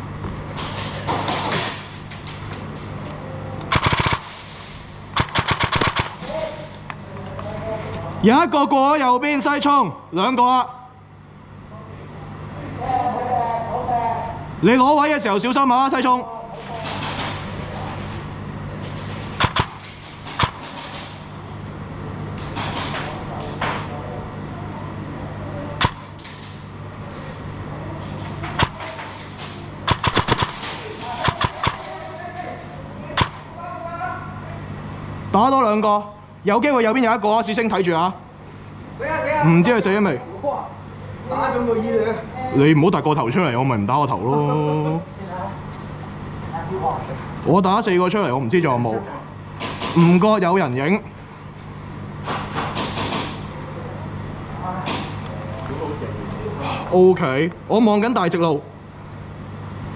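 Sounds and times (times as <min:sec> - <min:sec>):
steady low hum: 0:00.0 - 0:59.9
airsoft gun burst: 0:03.7 - 0:06.4, 0:19.4 - 0:21.0, 0:25.8 - 0:26.5, 0:28.6 - 0:28.9, 0:29.8 - 0:32.1, 0:33.2 - 0:33.5.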